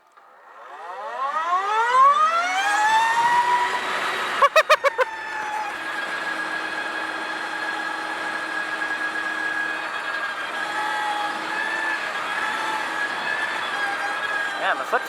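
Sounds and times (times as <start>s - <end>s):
electric motorcycle whining: 0.1s - 15.0s.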